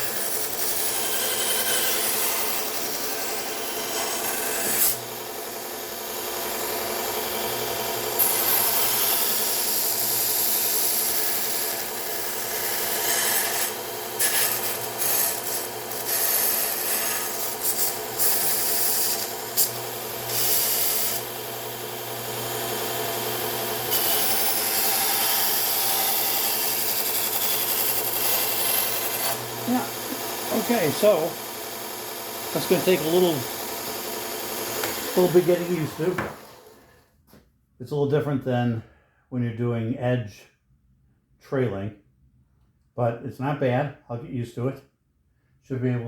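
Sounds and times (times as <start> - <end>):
belt grinder motor hum: 0.0 - 37.0
steel hissing on abrasive belt: 28.8 - 36.7.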